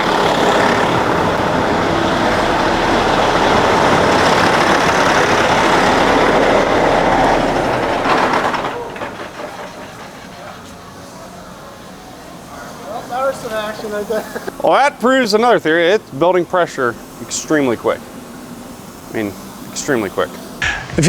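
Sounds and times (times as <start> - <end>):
cooling system venting hiss: 0.0 - 21.0.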